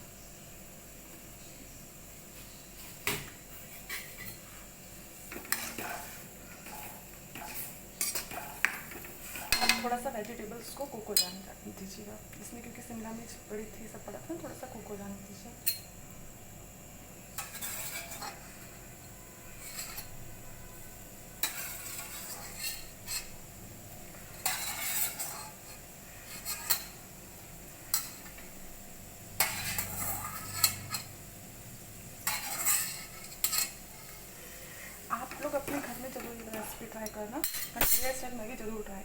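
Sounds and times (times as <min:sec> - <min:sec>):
spoon scraping a pan: 0:03.5 - 0:10.0, 0:11.1 - 0:11.5, 0:17.3 - 0:23.4, 0:24.0 - 0:27.0, 0:27.8 - 0:28.6, 0:29.4 - 0:31.2, 0:32.2 - 0:38.3
metal clinking on a pan: 0:09.4 - 0:10.0, 0:11.1 - 0:11.5, 0:29.4 - 0:31.1, 0:32.2 - 0:33.8, 0:35.3 - 0:38.2.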